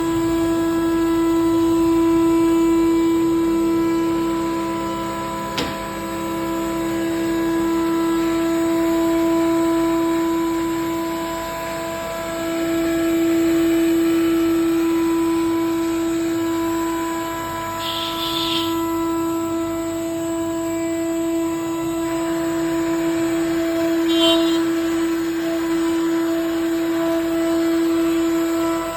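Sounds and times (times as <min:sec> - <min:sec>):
router spindle whining: 0:00.1 - 0:28.9.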